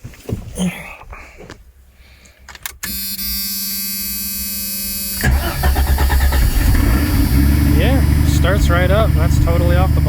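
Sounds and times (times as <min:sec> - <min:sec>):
car starter motor cranking: 0:04.8 - 0:09.0.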